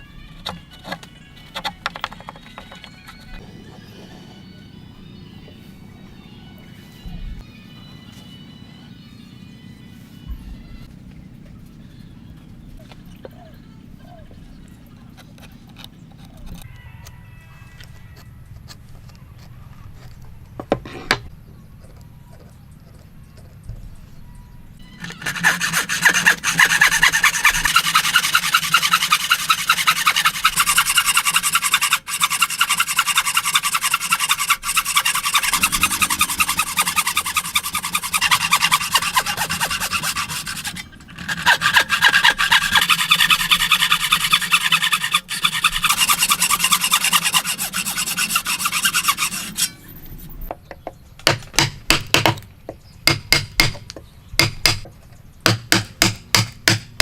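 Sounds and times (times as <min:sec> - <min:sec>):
hand tool sawing wood: 0:25.0 - 0:49.8
sharp knocks: 0:53.1 - 0:57.0.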